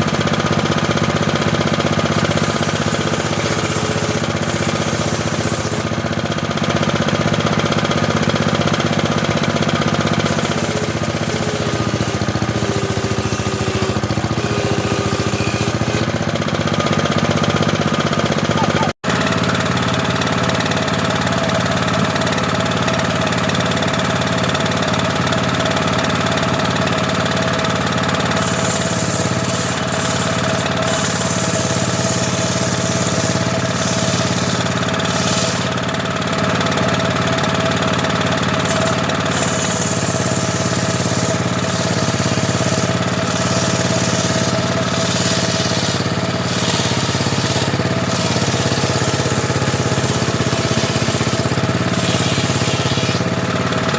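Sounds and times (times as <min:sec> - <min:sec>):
table saw humming: 0:00.0 - 0:53.9
saw blade hissing through wood: 0:01.9 - 0:05.9, 0:10.1 - 0:16.1, 0:28.0 - 0:36.2, 0:38.4 - 0:53.6.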